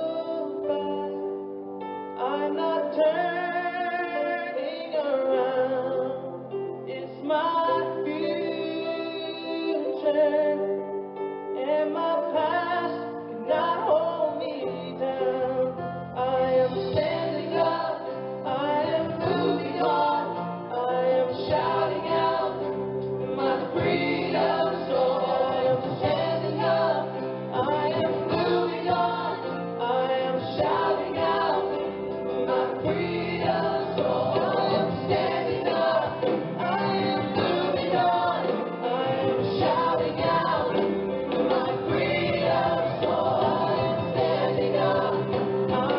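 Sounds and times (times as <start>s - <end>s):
choir singing over instruments: 16.2s - 45.9s.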